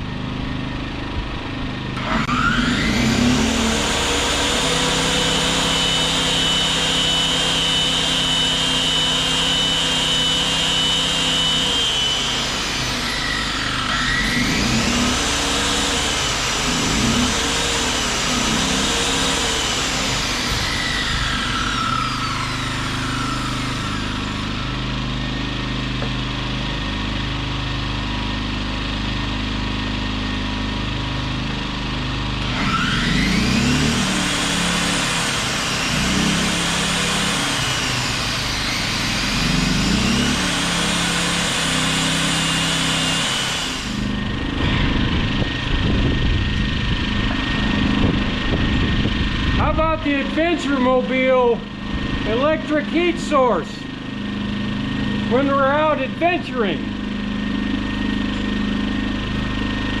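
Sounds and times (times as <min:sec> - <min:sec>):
generator engines running: 0:00.0 - 1:00.0.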